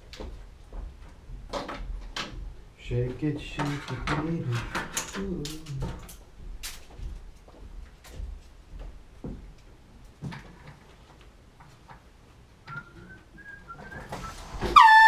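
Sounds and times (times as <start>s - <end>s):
handling knocks and clicks: 0.1s - 12.1s
person whistling faintly: 12.6s - 15.0s.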